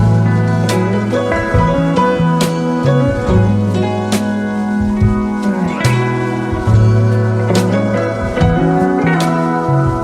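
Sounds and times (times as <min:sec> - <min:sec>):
guitar and bass music: 0:00.0 - 0:10.0.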